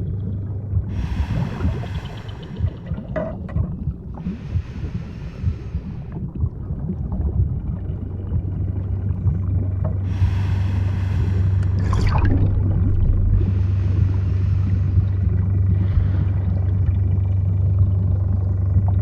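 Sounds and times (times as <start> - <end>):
low steady hum: 0.0 - 19.0
underwater rumble: 0.0 - 19.0
hiss: 0.9 - 3.0, 4.2 - 6.2, 10.1 - 11.8, 13.4 - 15.2.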